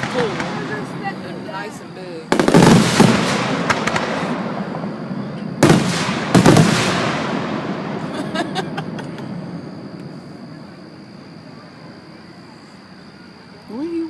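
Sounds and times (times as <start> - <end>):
fireworks bursts with rumble: 0.0 - 11.6
faint crackling pops: 2.3 - 7.6.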